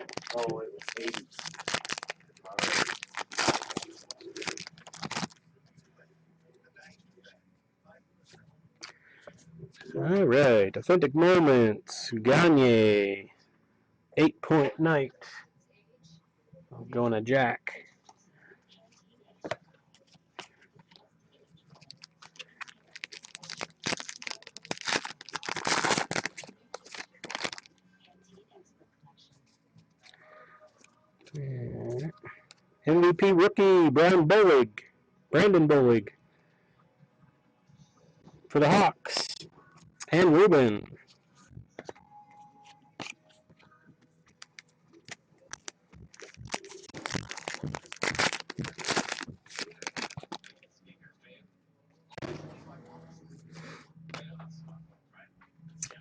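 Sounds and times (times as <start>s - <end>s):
foil wrapper crinkling and tearing: 0.0s - 5.4s, 21.7s - 27.8s, 45.5s - 50.6s.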